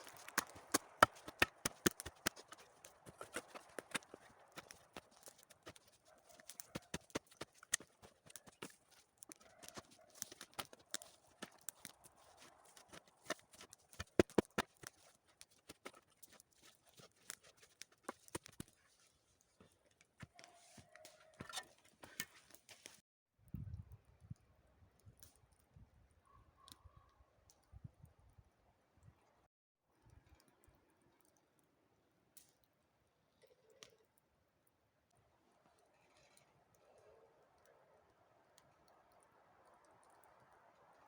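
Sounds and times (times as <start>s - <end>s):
shovel digging earth: 0.0s - 19.0s, 20.1s - 23.0s.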